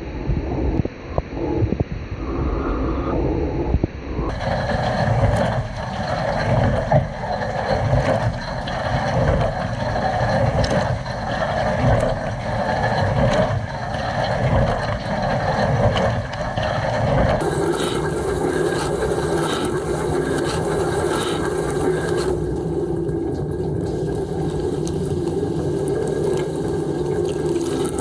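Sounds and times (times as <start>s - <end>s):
dishwasher water jets spraying: 17.4s - 28.0s.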